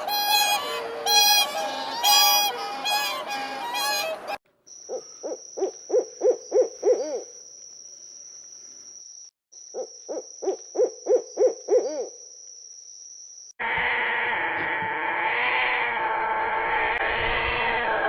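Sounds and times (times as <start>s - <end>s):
owl hooting: 4.9s - 7.4s, 9.7s - 12.2s, 13.6s - 18.0s.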